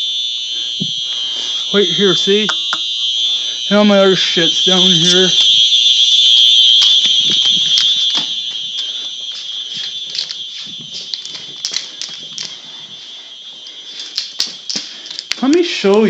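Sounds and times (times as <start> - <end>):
fire alarm high-pitched tone: 0.0 - 16.0.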